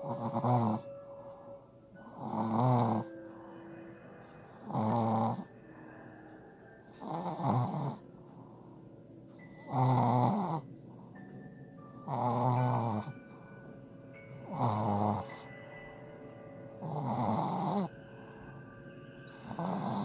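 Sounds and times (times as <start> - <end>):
puppy snoring: 0.0 - 3.5, 4.4 - 5.9, 6.8 - 8.7, 9.3 - 11.2, 11.9 - 13.5, 14.4 - 15.8, 16.7 - 18.0, 19.3 - 20.0.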